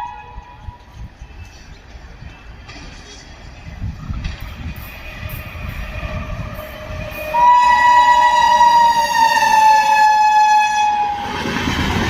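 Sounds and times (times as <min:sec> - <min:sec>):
train rumble: 0:00.0 - 0:12.0
locomotive horn blast: 0:06.0 - 0:11.3.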